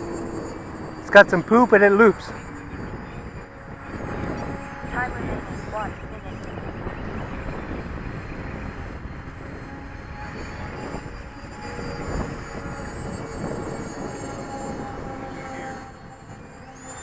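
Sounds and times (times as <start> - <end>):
electric ducted fan whining: 0.0 - 17.0
wind rumble on microphone: 0.0 - 17.0.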